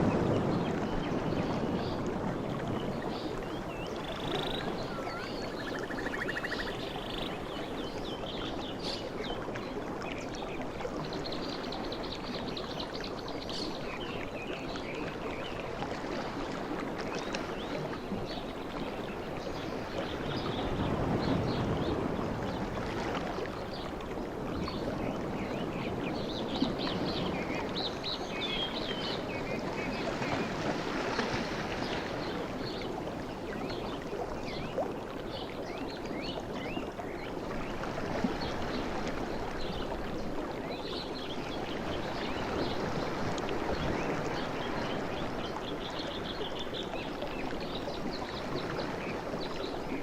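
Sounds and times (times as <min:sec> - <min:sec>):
sea surf washing: 0:00.0 - 0:07.8, 0:19.6 - 0:33.4
small birds chirping: 0:03.2 - 0:07.7.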